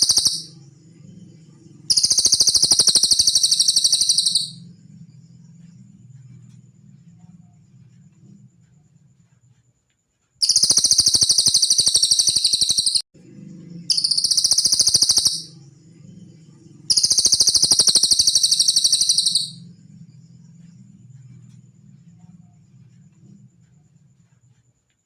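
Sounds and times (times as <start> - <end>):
bird trilling: 0.0 - 0.6, 1.8 - 4.6, 10.4 - 13.0, 13.9 - 15.7, 16.9 - 19.6.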